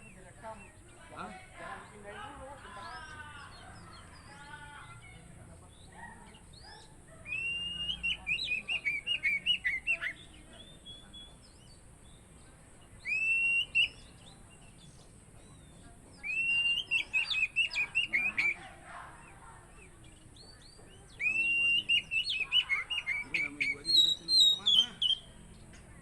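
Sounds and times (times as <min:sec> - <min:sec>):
bird singing sharp whistled notes: 0:06.5 - 0:12.2, 0:13.0 - 0:18.6, 0:20.4 - 0:25.6.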